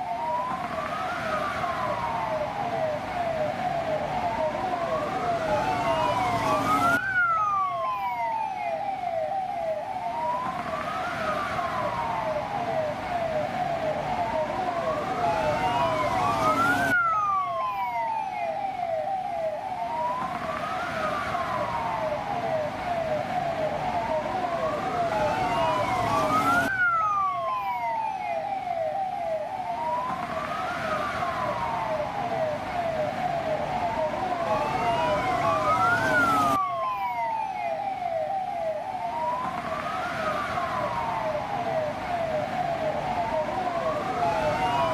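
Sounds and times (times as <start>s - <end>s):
police siren wail: 0.0s - 44.9s
siren yelp chirps: 4.4s - 10.4s, 14.4s - 20.2s, 23.4s - 41.9s, 42.5s - 44.9s.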